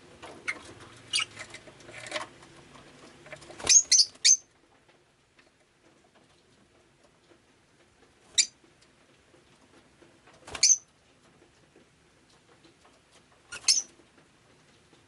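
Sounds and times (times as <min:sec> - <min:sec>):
lovebird high-pitched calls: 0:01.1 - 0:01.4, 0:03.6 - 0:04.5, 0:08.3 - 0:08.6, 0:10.6 - 0:10.8, 0:13.5 - 0:13.9.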